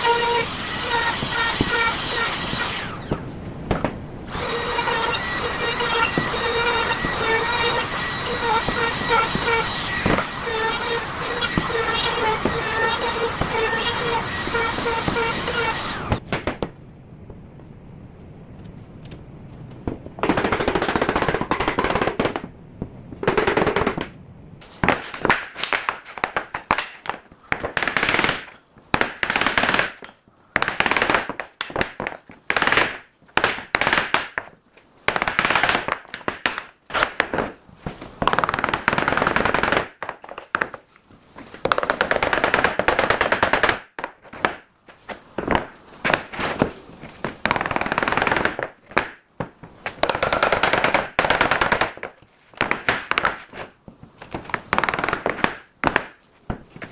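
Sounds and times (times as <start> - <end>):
power tool rattling bursts: 0.0 - 3.2, 4.3 - 16.2.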